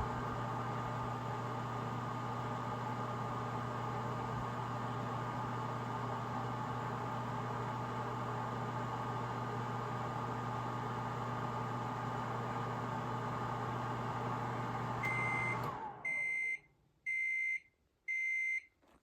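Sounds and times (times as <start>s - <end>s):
microwave oven humming: 0.0s - 16.4s
microwave beeping: 14.5s - 18.7s.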